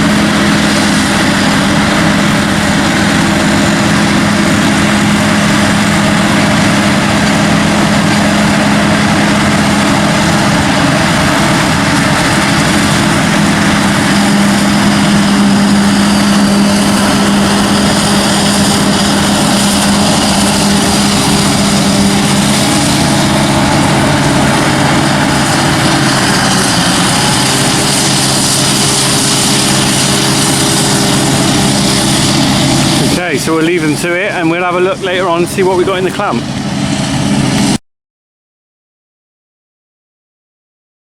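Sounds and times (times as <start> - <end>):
heavy diesel engines running: 0.0 - 37.8.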